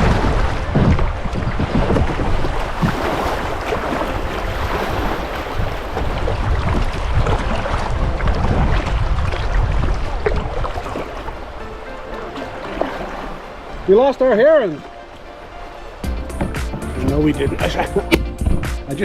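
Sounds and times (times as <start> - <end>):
wind rumbling on microphone: 0.0 - 11.8, 16.0 - 18.8
river water rushing: 0.0 - 19.0.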